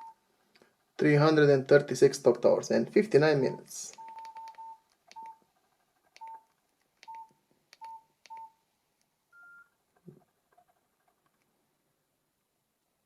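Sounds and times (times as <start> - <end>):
keypad button clicks: 4.0 - 5.4
short phone beeps: 9.3 - 9.7.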